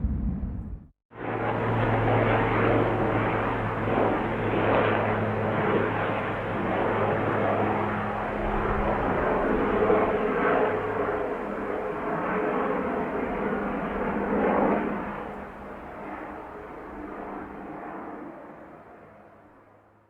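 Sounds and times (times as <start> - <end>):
airplane engine running: 0.0 - 18.0.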